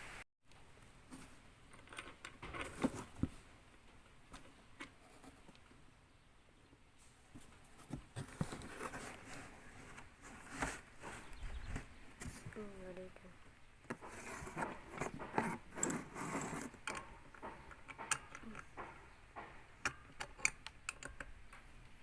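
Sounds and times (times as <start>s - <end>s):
metal parts clicking and knocking: 14.6s - 21.6s.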